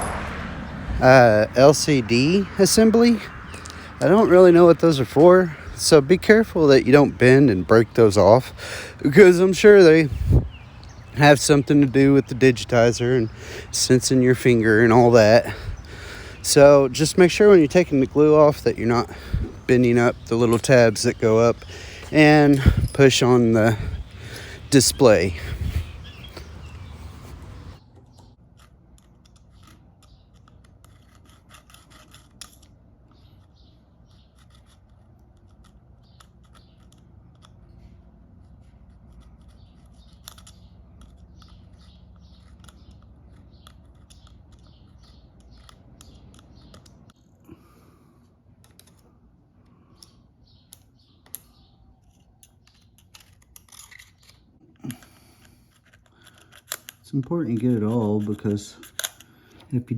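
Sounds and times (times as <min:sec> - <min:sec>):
adhesive strip being scraped: 0:38.4 - 0:46.1.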